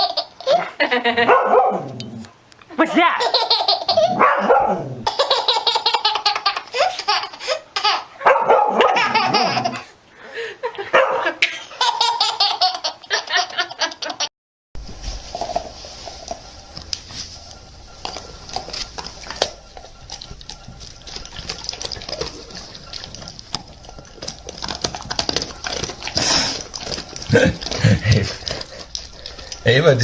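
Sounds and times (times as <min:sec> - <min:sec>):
baby laughing: 0:00.0 - 0:01.2, 0:03.2 - 0:04.2, 0:05.1 - 0:08.2, 0:08.8 - 0:14.3
background noise: 0:00.0 - 0:30.0.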